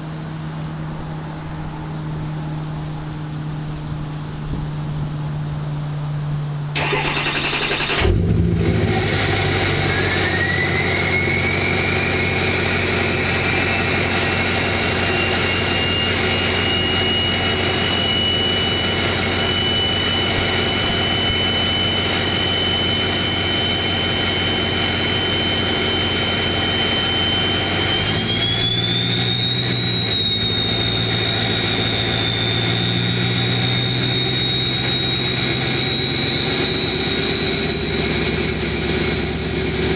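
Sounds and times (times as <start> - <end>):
diesel engine starting and idling: 6.4 - 39.9
turbo whistle: 8.8 - 39.9.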